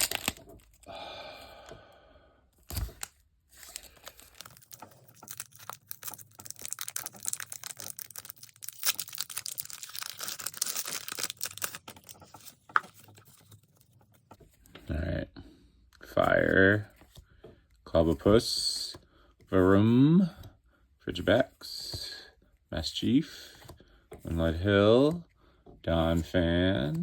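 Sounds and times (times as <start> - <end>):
foil pack ripping: 0.0 - 0.4, 3.8 - 12.2
foil wrapper crinkling: 0.0 - 0.8, 2.8 - 12.5.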